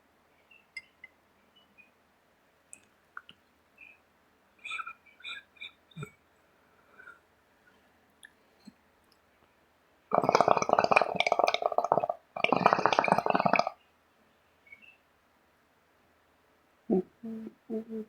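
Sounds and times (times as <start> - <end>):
bong water bubbling: 10.1 - 13.7.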